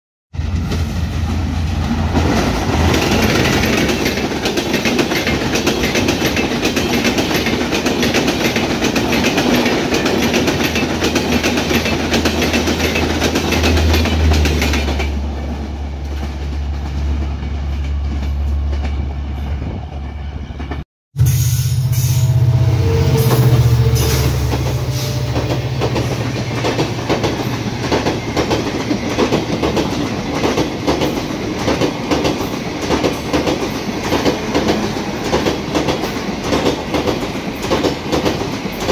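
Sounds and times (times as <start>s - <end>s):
train wheels clattering on rails: 0.4s - 19.1s, 23.3s - 38.9s.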